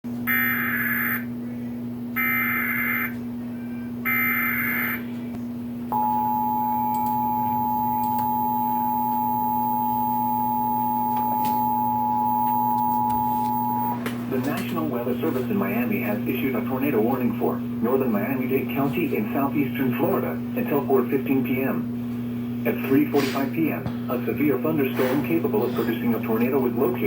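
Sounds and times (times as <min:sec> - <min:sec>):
low steady hum: 0:00.1 - 0:27.0
two-tone attention signal: 0:06.0 - 0:14.0
warbling data header tones: 0:06.0 - 0:14.0.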